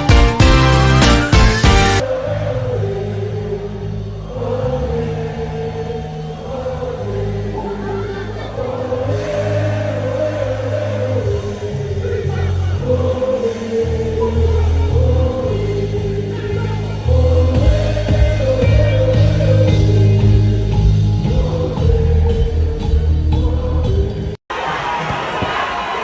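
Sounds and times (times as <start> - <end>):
live music with heavy bass: 0.0 - 2.0, 14.4 - 24.4
person singing: 1.9 - 24.3.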